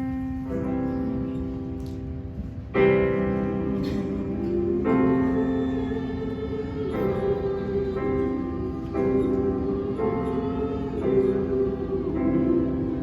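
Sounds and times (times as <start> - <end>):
piano chords: 0.0 - 13.0.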